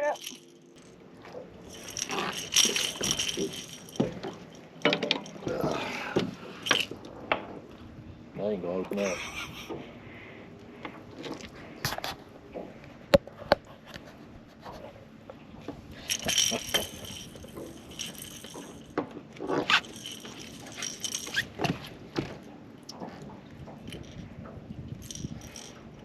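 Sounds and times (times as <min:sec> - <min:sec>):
small knocks: 0:02.8 - 0:05.5.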